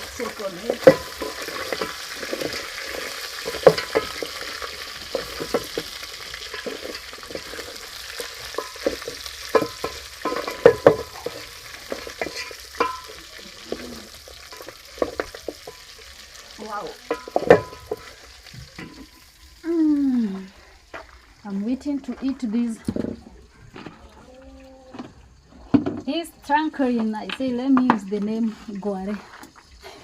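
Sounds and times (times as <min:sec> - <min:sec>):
utensil scraping pot: 0:00.0 - 0:19.3
meat sizzling in a pot: 0:00.0 - 0:23.8, 0:26.1 - 0:30.0.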